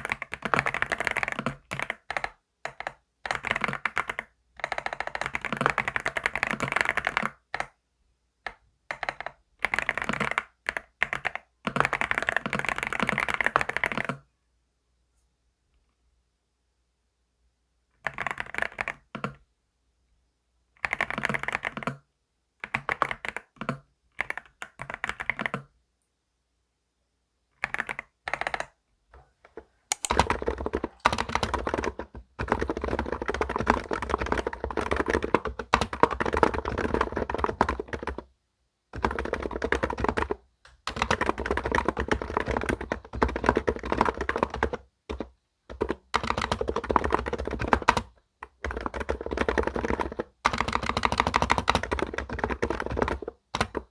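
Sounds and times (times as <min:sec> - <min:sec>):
typing on computer keyboard: 0:00.0 - 0:07.7, 0:08.4 - 0:14.2, 0:20.8 - 0:22.0, 0:22.6 - 0:25.7, 0:29.9 - 0:38.3, 0:39.0 - 0:53.9.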